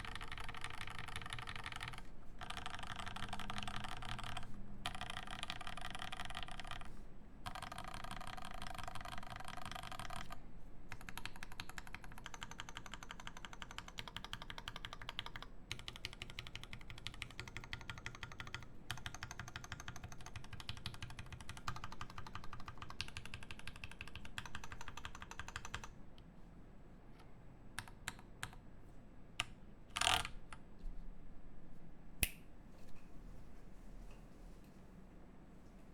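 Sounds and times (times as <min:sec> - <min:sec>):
mechanical keyboard typing: 0:00.0 - 0:25.9, 0:29.4 - 0:30.4.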